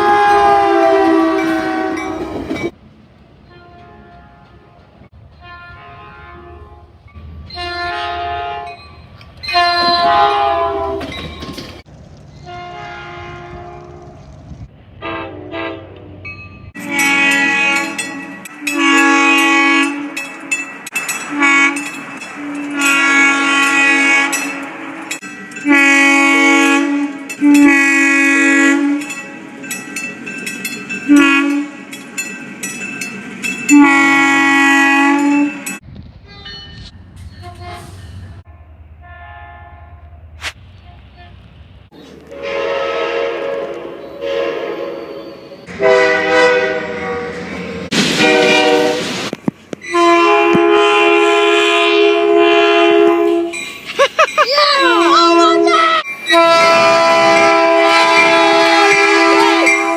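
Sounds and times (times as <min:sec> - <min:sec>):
train horn blasts: 0:00.0 - 0:02.4, 0:03.5 - 0:04.8, 0:05.4 - 0:06.9, 0:07.5 - 0:08.8, 0:09.5 - 0:11.2, 0:12.4 - 0:14.0, 0:15.0 - 0:16.2, 0:16.8 - 0:20.2, 0:21.3 - 0:25.0, 0:25.6 - 0:29.2, 0:31.1 - 0:31.8, 0:33.7 - 0:35.7, 0:37.4 - 0:40.0, 0:42.3 - 0:49.1, 0:49.9 - 0:53.6, 0:54.9 - 0:59.9.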